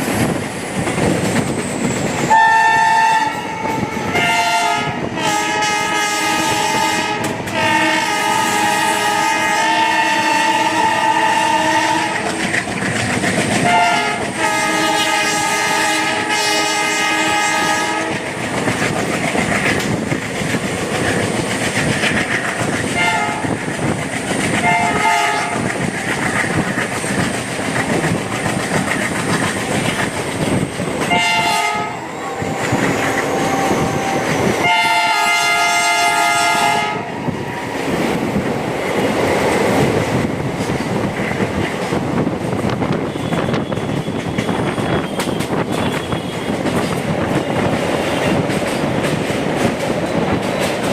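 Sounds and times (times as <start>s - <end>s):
train wheels clacking over rail joints: 0.0s - 50.9s
diesel locomotive horn blasts: 2.3s - 12.6s, 13.6s - 18.4s, 22.9s - 23.6s, 24.6s - 26.2s, 31.0s - 37.8s, 42.7s - 46.9s.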